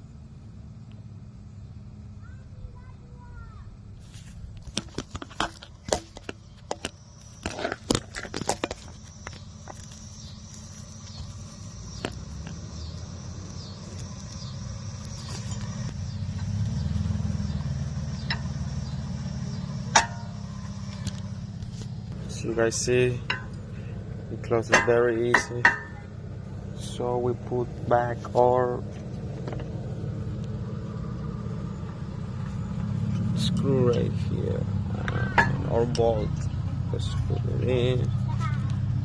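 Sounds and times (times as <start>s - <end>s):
low vehicle hum: 0.0s - 39.0s
sharp metallic clicks and knocks: 18.2s - 18.6s, 19.9s - 21.9s, 23.2s - 23.6s, 24.6s - 26.0s.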